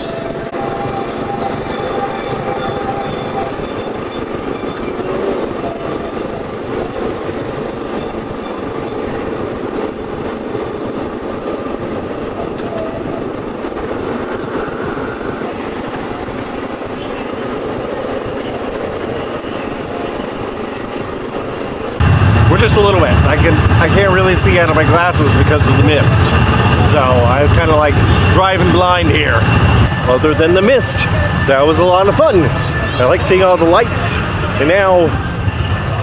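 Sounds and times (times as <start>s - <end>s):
ride vehicle rumbling on track: 0.0s - 36.0s
wheels squealing: 0.0s - 36.0s.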